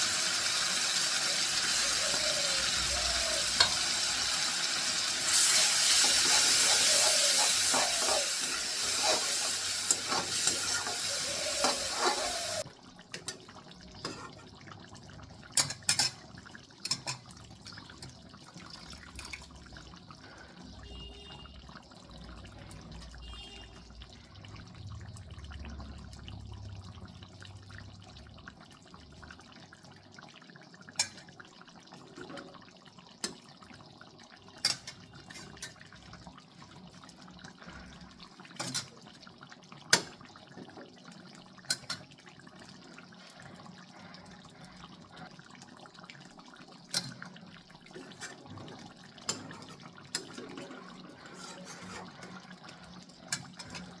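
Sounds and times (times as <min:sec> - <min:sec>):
running water at a sink: 0:00.0 - 0:21.4, 0:34.4 - 0:54.0.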